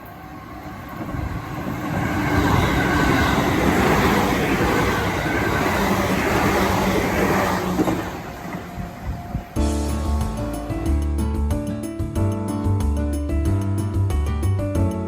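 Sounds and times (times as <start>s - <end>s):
train passing: 0.0s - 11.6s.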